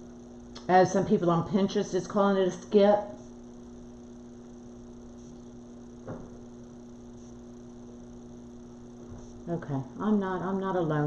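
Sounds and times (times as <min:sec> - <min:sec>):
electrical mains hum: 0:00.0 - 0:11.0
soft tap: 0:06.0 - 0:06.4.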